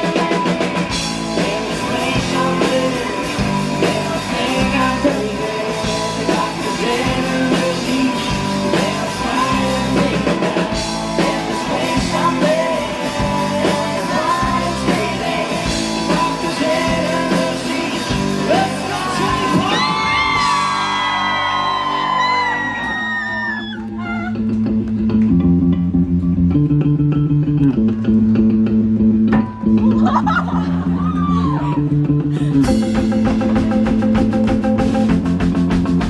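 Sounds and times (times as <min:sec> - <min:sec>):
sung and yelled vocals: 0:00.0 - 0:24.3
rock band playing live: 0:00.0 - 0:36.0.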